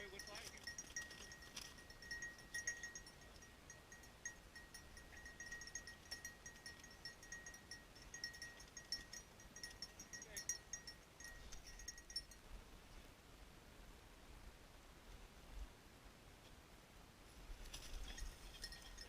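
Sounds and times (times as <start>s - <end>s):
small bell jingling: 0.0s - 12.4s, 17.8s - 19.0s.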